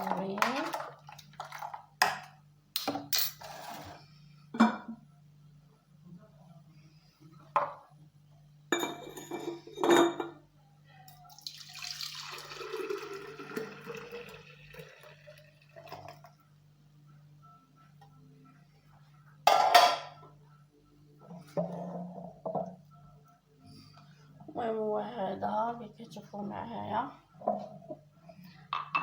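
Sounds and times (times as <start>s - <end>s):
glassware and dishes clinking: 0.0s - 3.9s, 8.7s - 10.4s, 19.5s - 20.2s, 28.7s - 29.0s
juice poured into a glass: 11.3s - 16.2s.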